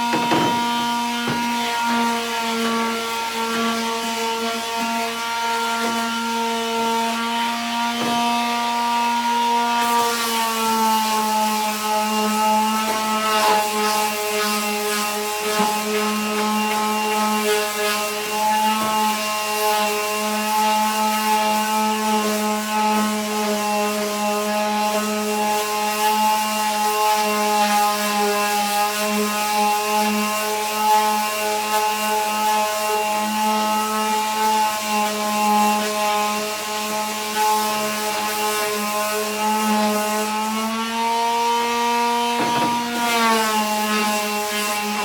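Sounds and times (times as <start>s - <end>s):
wood knocking against sander: 0.0s - 1.7s, 8.0s - 8.4s, 42.2s - 43.1s
electric sander hum: 0.0s - 45.0s.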